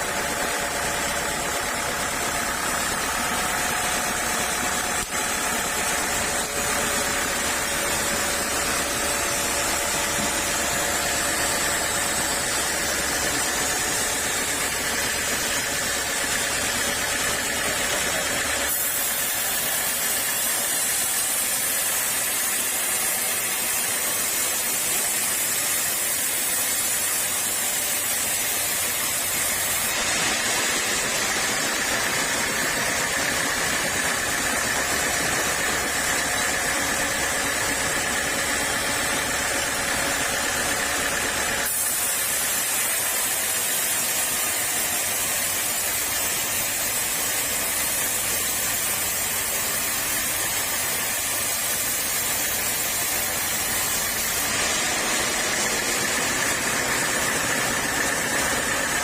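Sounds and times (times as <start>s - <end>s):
sawmill saw running: 0.0s - 59.0s.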